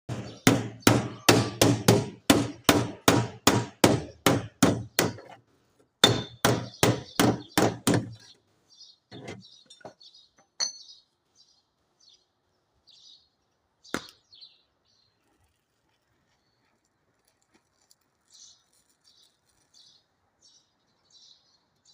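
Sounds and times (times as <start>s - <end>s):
hammer striking sheet metal: 0.1s - 5.3s.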